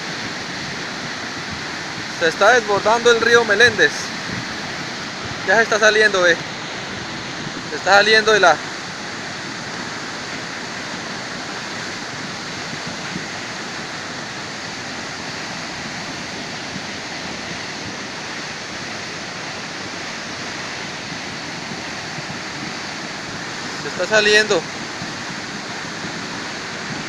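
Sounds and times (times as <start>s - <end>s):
river rushing: 0.0s - 27.0s.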